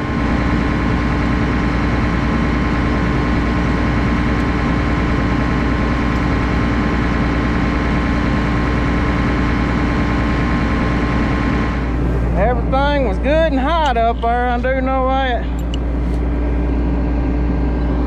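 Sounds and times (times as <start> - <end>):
combine harvester hum: 0.0 - 18.0
constant tones: 11.6 - 16.9.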